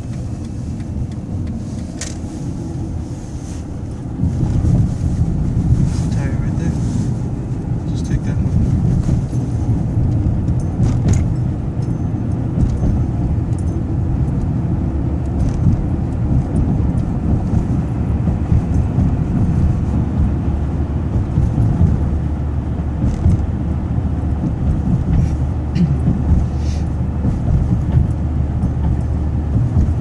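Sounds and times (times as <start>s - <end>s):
road vehicles rumbling: 0.0s - 30.0s.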